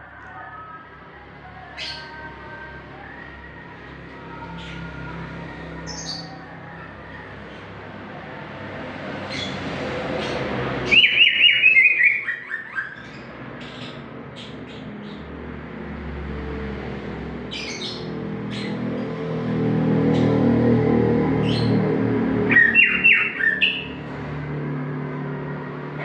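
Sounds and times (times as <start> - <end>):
leafbird singing: 1.5 - 6.5, 10.2 - 15.3, 22.5 - 24.0.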